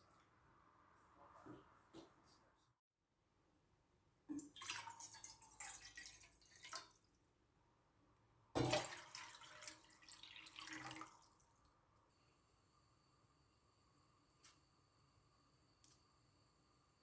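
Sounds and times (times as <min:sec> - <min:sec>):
liquid pouring and splashing: 0:04.3 - 0:07.0, 0:08.6 - 0:11.6.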